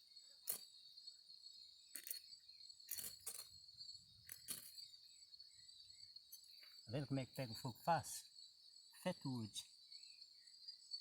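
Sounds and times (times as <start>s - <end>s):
crickets chirring: 0.0s - 11.0s.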